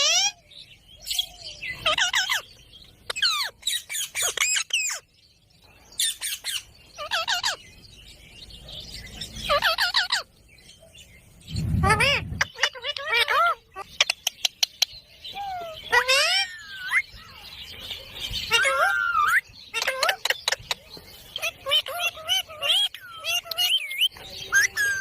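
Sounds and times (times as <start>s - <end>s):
parrot squawking: 11.6s - 13.9s, 15.4s - 17.0s.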